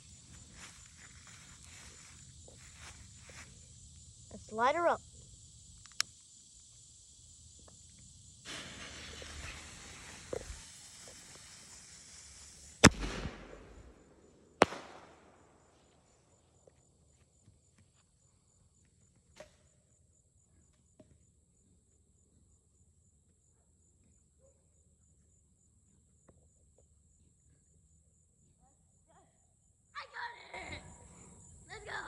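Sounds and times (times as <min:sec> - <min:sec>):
firework fuse hissing: 0:00.0 - 0:15.6
insects chirring: 0:00.0 - 0:32.0
faint clicks: 0:05.8 - 0:06.2
firework bangs: 0:08.4 - 0:15.9.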